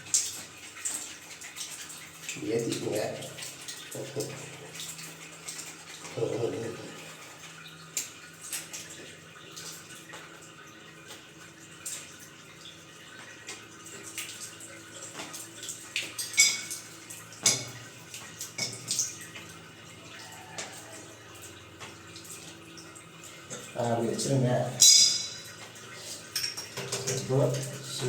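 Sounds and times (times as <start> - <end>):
metal plumbing fittings clinking: 16.0 - 17.8, 24.7 - 28.0.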